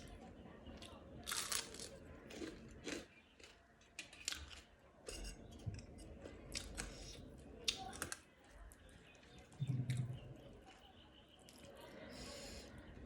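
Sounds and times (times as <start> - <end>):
chewing with sharp crunches: 0.8 - 8.2.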